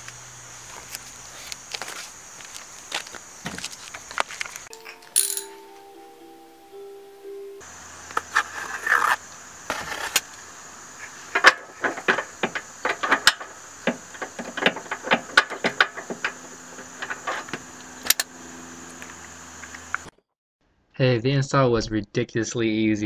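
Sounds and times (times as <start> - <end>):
metal tools and bolts clanking: 4.7 - 5.7, 11.3 - 18.3.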